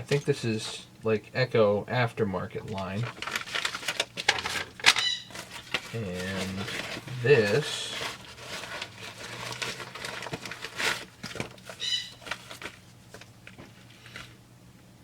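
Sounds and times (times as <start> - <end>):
rustling packaging: 2.6 - 14.4.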